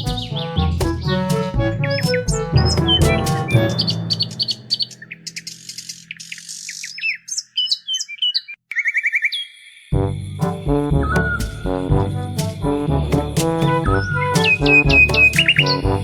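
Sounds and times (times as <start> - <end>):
background music: 0.0 - 6.0, 10.0 - 16.0
birds chirping: 0.0 - 9.6.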